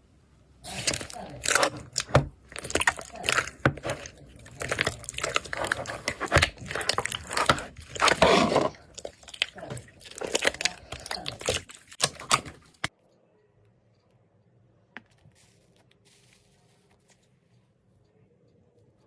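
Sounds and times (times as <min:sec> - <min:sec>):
slime crackling and clicking: 0:00.7 - 0:12.9.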